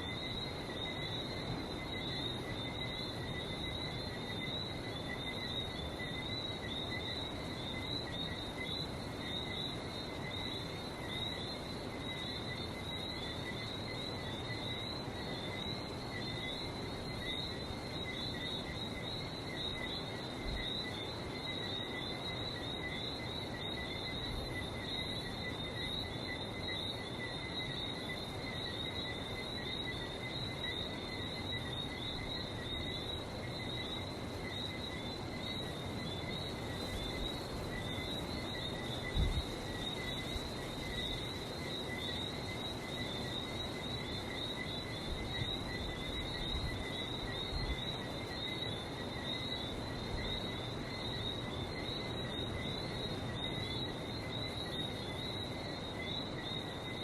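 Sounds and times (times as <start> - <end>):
frogs whistling chorus: 0.0 - 57.0.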